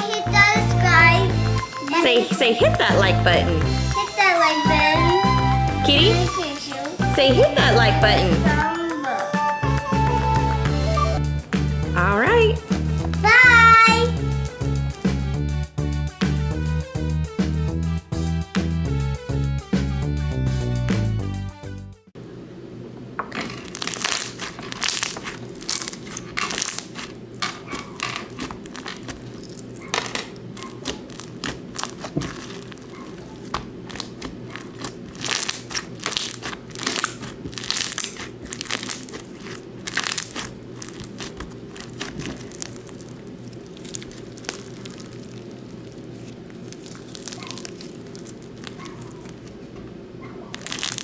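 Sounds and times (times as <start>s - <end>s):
slime squishing by hand: 23.4s - 51.0s.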